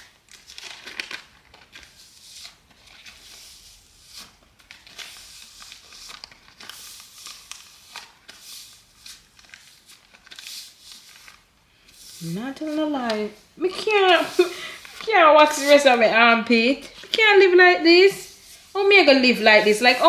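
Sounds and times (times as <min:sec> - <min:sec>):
crinkling and rustling supplies: 0:00.0 - 0:20.0.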